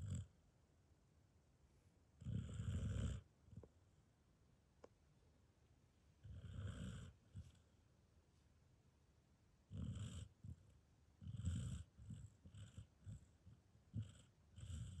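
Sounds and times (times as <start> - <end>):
dog snoring and snorting: 0.0 - 0.4, 2.2 - 3.7, 6.2 - 7.7, 9.7 - 15.0.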